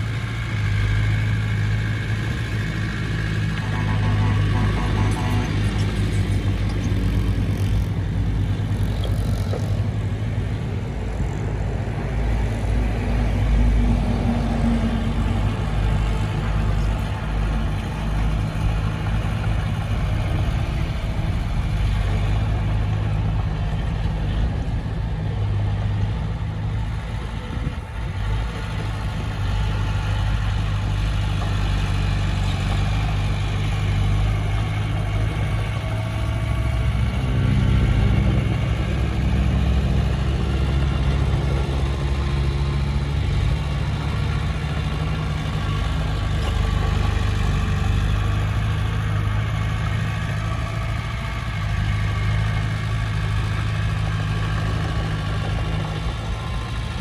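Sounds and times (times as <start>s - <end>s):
heavy diesel engine running: 0.0s - 57.0s.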